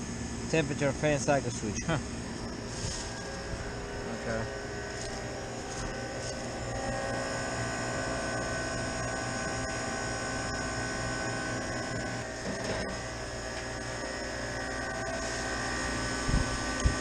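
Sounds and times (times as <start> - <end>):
refrigeration unit humming: 0.0 - 17.0.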